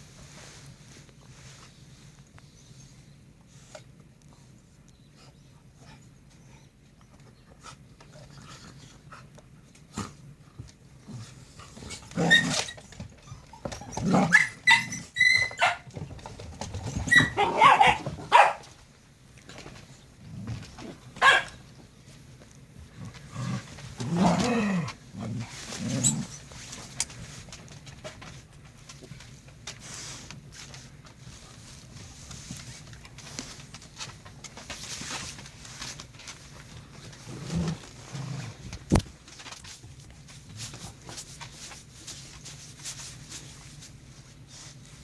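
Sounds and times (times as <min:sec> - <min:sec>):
dogs barking and growling: 0:11.0 - 0:16.0, 0:16.6 - 0:18.8, 0:20.2 - 0:21.7, 0:22.8 - 0:26.8.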